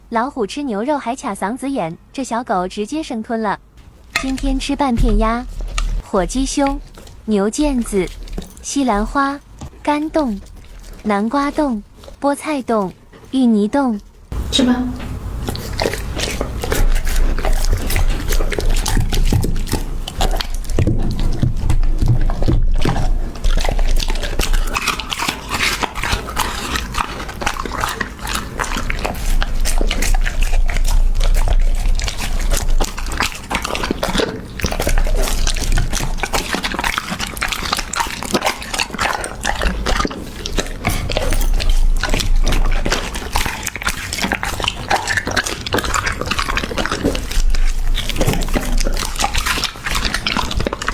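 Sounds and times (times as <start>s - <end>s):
puppy chewing wet meat: 3.7s - 50.9s.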